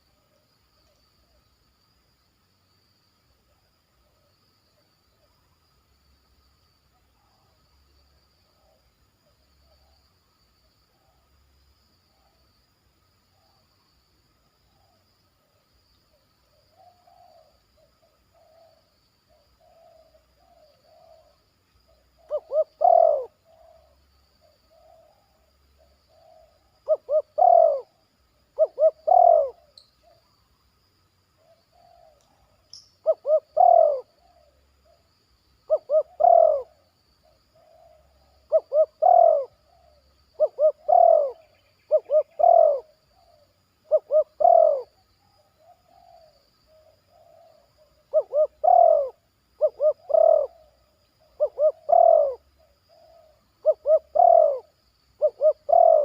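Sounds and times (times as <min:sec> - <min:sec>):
dove cooing: 0:16.7 - 0:24.0, 0:24.7 - 0:28.0, 0:28.6 - 0:30.2, 0:31.4 - 0:35.0, 0:35.7 - 0:56.0.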